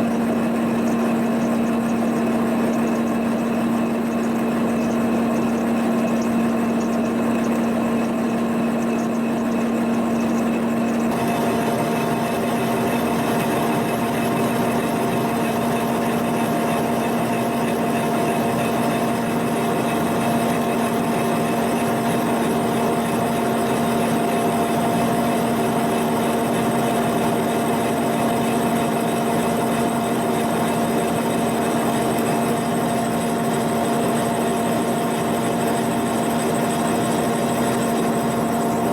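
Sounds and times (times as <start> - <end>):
boring machine cutting metal: 9.5 - 38.9.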